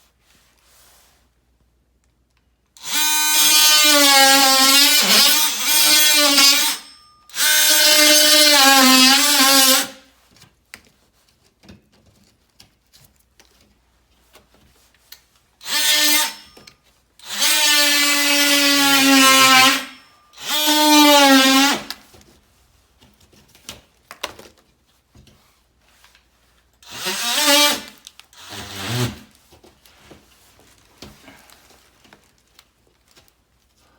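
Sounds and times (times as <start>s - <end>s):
electric drill whining: 2.8s - 10.0s, 15.6s - 16.6s, 17.2s - 21.9s, 26.8s - 29.2s.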